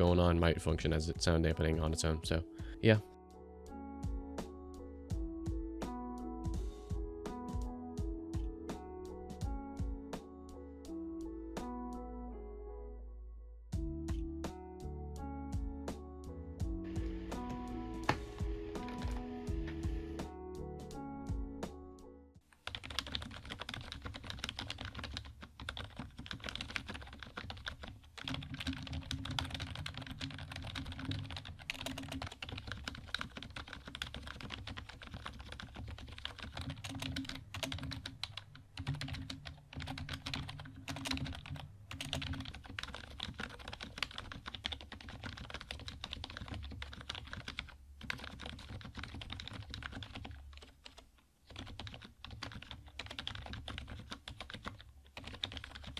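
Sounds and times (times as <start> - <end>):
fast typing on keyboard: 22.6 - 55.9.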